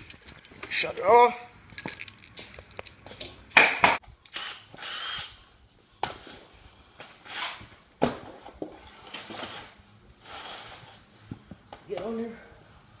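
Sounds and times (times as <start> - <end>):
handling clicks and knocks: 0.0 - 0.9, 1.7 - 3.4.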